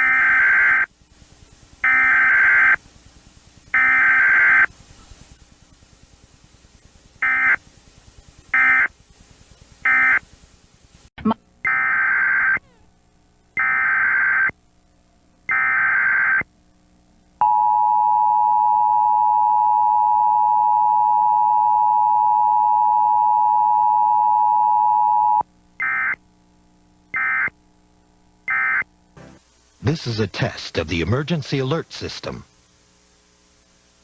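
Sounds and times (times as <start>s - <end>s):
buzzy data burst screech: 7.2s - 7.6s, 8.5s - 9.0s, 9.8s - 10.3s.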